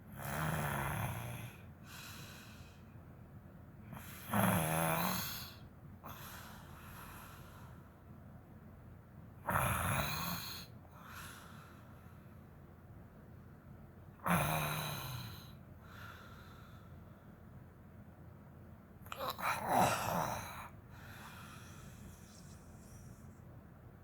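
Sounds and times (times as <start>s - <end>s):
woman snoring: 0.2s - 1.6s, 4.0s - 5.6s, 9.5s - 10.7s, 14.2s - 15.6s, 19.1s - 23.2s
soft breath: 1.8s - 3.0s, 6.1s - 8.1s, 10.9s - 12.6s, 15.2s - 17.6s, 19.1s - 23.7s.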